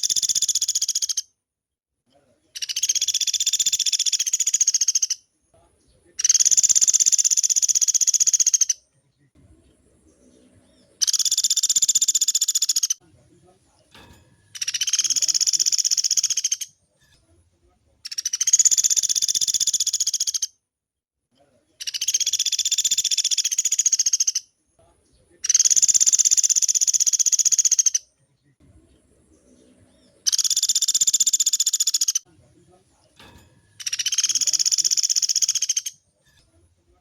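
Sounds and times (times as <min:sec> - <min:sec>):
woodpecker rattling calls: 0:00.0 - 0:01.2, 0:02.6 - 0:05.2, 0:06.2 - 0:08.8, 0:10.7 - 0:13.0, 0:14.4 - 0:16.8, 0:18.1 - 0:20.5, 0:21.8 - 0:24.5, 0:25.4 - 0:28.0, 0:29.3 - 0:32.2, 0:33.7 - 0:36.1.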